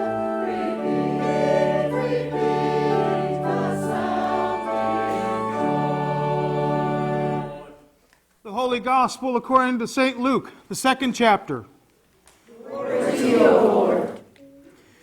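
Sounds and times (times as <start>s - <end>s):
choir singing: 0.0s - 7.9s, 12.6s - 14.3s
organ chords: 0.0s - 7.9s.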